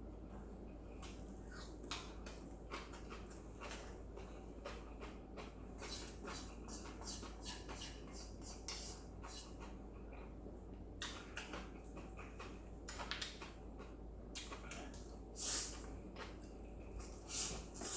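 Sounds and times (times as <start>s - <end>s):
person chewing noodles: 1.0s - 8.6s.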